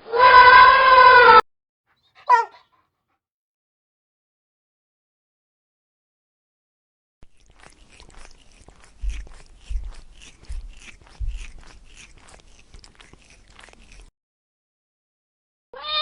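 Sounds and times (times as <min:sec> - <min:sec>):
animal chewing crunchy food: 0:07.2 - 0:14.1.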